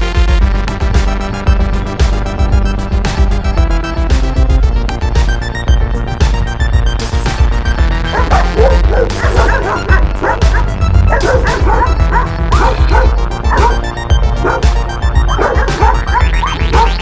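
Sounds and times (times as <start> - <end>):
background music with steady beat: 0.0 - 17.0
dogs barking excitedly: 8.0 - 17.0.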